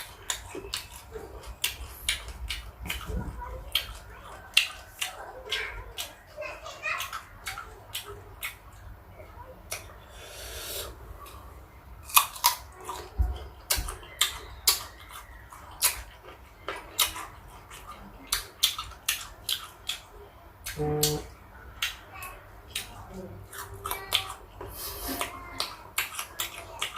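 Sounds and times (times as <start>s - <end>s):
crunching chewing of fruit: 0.0s - 26.9s
brief voiced sound: 20.8s - 21.3s.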